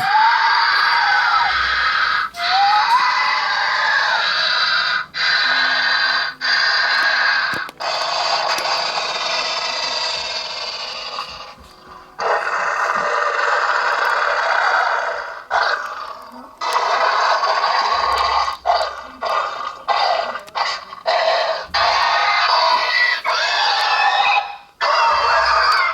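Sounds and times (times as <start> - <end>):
creature hissing and screeching: 0.0 - 11.2, 16.7 - 25.9.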